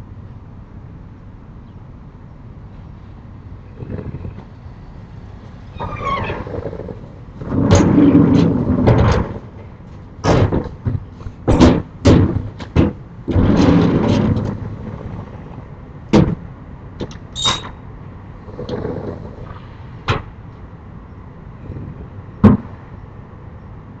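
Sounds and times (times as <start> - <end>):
sliding shutters rumbling along tracks: 3.8 - 23.2
high squeak: 17.4 - 17.7.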